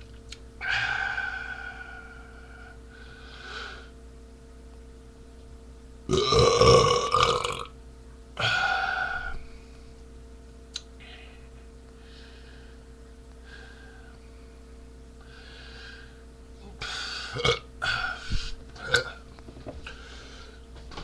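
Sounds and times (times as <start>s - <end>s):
faint steady hum: 0.0s - 21.0s
man burping: 6.1s - 7.7s, 17.3s - 17.7s, 18.8s - 19.2s.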